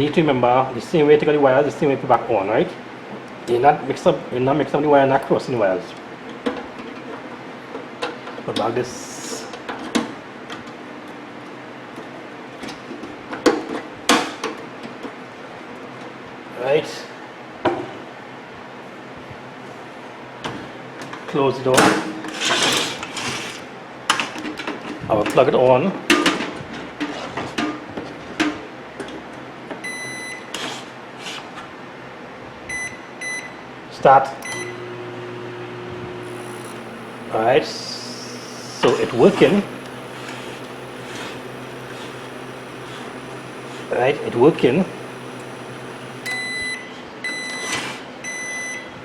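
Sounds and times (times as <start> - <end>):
microwave keypad beeping: 29.8 - 30.5, 32.7 - 33.5, 34.4 - 34.8, 36.2 - 48.9.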